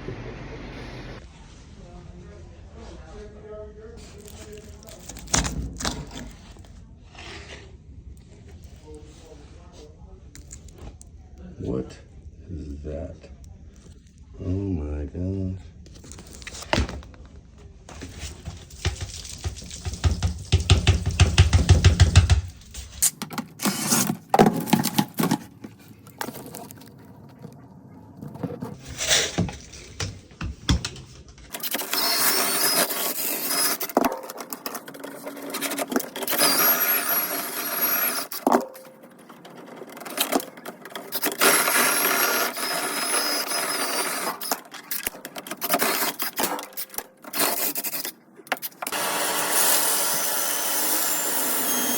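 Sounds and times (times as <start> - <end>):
knocks and scrapes: 17.9 - 31.8.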